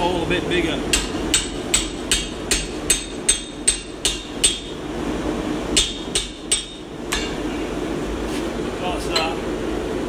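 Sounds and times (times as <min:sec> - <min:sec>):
hammer ringing on hot steel: 0:00.9 - 0:04.8, 0:05.7 - 0:07.5.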